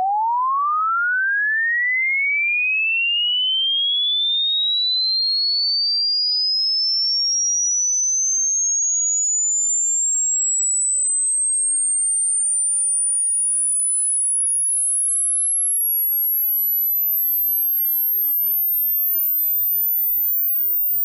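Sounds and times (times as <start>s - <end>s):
sine tone gliding upward: 0.0s - 21.0s.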